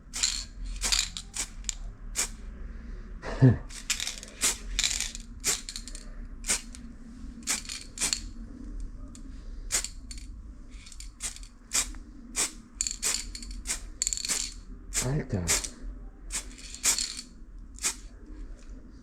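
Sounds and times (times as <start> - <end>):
spray can hissing bursts: 0.0 - 2.4, 3.7 - 6.8, 7.4 - 8.2, 9.7 - 10.0, 10.8 - 15.7, 16.3 - 17.2, 17.8 - 18.1.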